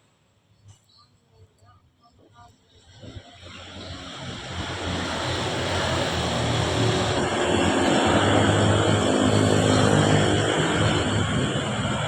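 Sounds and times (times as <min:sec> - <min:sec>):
road and wind noise: 0:01.4 - 0:12.0.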